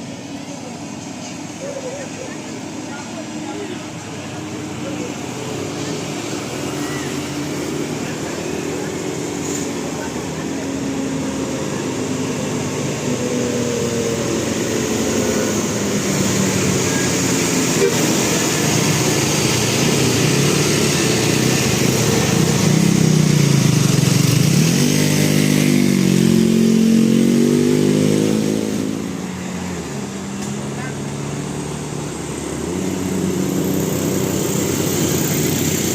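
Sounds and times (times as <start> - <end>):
traffic and engine noise: 0.0 - 35.9
multi-tone air horn melody: 17.7 - 18.4.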